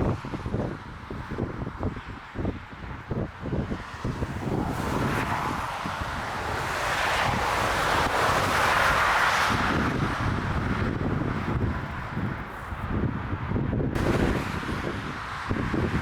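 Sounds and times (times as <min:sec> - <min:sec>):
wind buffeting microphone: 0:00.0 - 0:16.0
jet airliner passing: 0:03.9 - 0:12.9.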